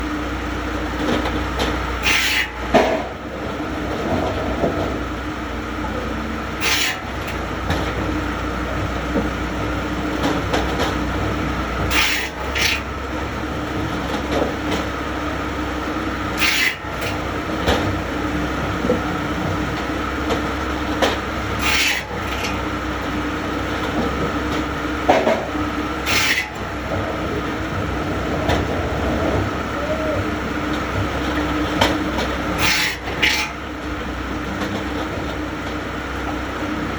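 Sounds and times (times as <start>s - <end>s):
woodworking machine humming: 0.0s - 36.9s
high hiss of working wood: 16.4s - 16.8s, 26.1s - 26.4s.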